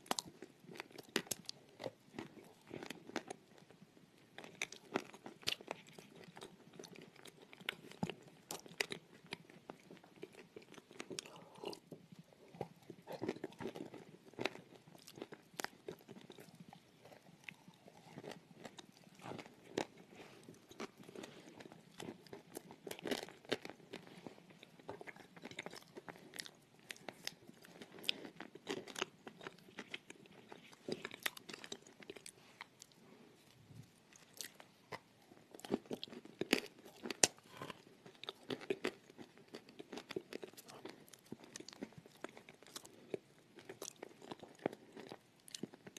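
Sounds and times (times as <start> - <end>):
chewing and crunching: 0.0 - 45.9.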